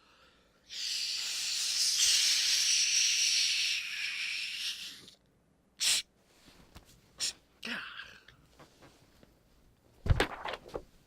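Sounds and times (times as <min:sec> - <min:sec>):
steady hiss: 0:00.7 - 0:05.2.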